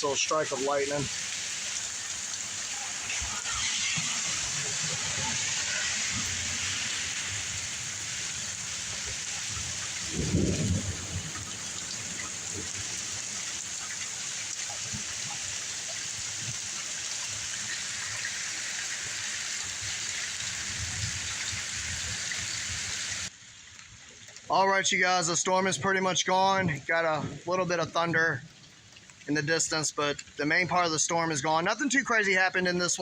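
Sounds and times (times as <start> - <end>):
steady rain falling: 0.0 - 33.0
low rumble: 10.0 - 13.0.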